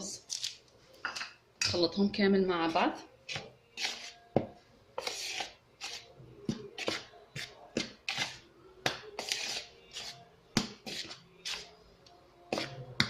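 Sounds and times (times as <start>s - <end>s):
dry ingredients stirred in bowl: 2.6s - 13.0s.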